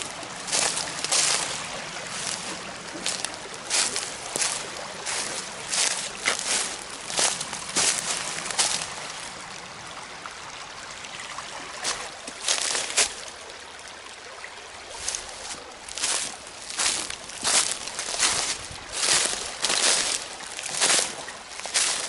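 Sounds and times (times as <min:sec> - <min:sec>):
footstep-like sounds: 0:00.0 - 0:09.0, 0:15.0 - 0:22.0
brook trickling: 0:00.0 - 0:22.0.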